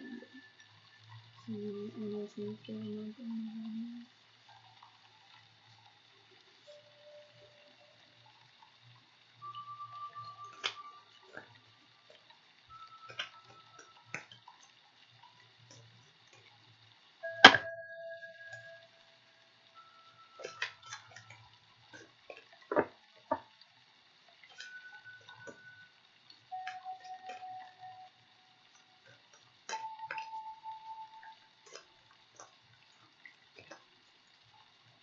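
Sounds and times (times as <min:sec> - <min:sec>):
single ringing notes: 0:17.2 - 0:21.3.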